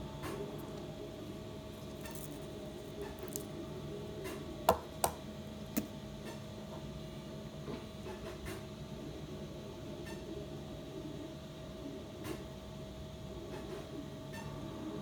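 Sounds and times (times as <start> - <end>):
faint steady hum: 0.0 - 7.8.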